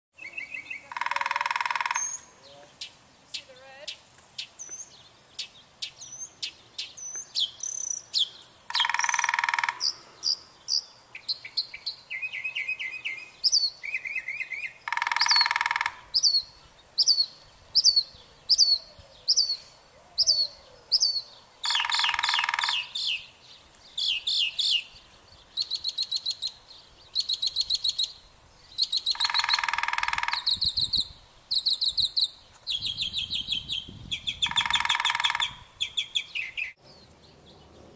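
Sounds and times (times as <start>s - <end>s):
high hooked bird chirps: 0.2s - 37.9s
harsh bird call: 7.4s - 10.8s, 12.2s - 19.6s, 20.2s - 23.2s, 32.8s - 36.8s.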